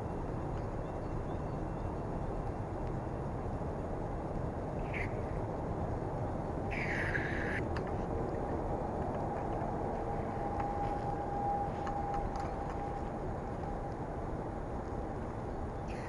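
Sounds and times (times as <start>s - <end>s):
faint steady hum: 0.0s - 16.0s
low forest rumble: 0.0s - 16.0s
bird calls: 4.8s - 5.4s, 6.7s - 7.7s.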